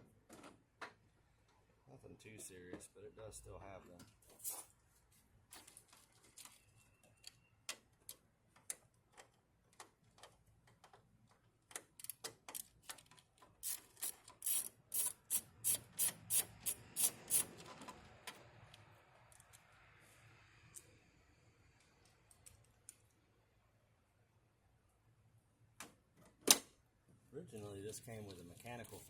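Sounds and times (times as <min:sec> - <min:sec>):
hand tools clicking: 0:13.6 - 0:17.5.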